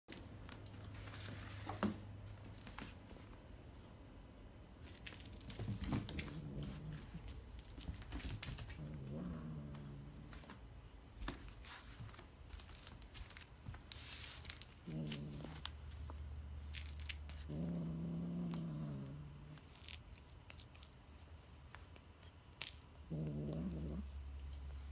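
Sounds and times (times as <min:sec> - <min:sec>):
kitten growling: 0:05.7 - 0:07.5, 0:08.1 - 0:10.6, 0:14.7 - 0:15.8, 0:17.0 - 0:19.9, 0:23.0 - 0:24.9.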